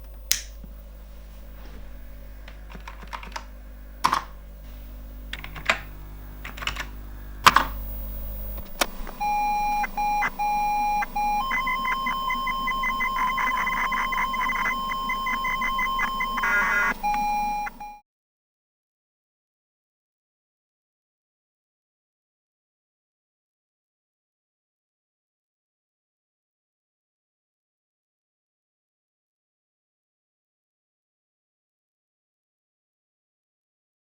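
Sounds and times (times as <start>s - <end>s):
sharp clicks: 0.0s - 17.9s
electronic beeps and tones: 1.2s - 18.0s.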